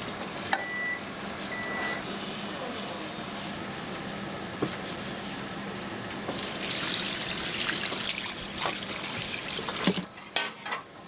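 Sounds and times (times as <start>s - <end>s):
liquid pouring and splashing: 6.3s - 10.1s.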